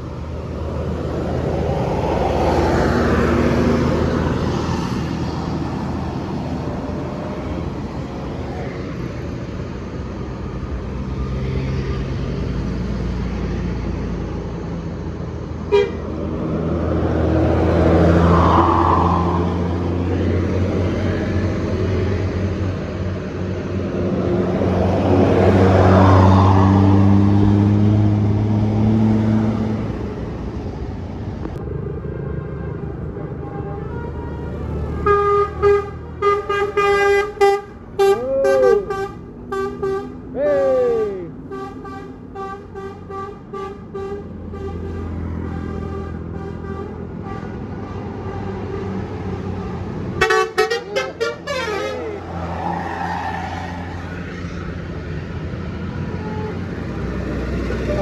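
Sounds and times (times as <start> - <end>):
bus driving past: 0.0 - 58.0
bus musical horn toots: 15.6 - 16.2, 32.2 - 40.4, 41.4 - 52.3, 55.8 - 57.2.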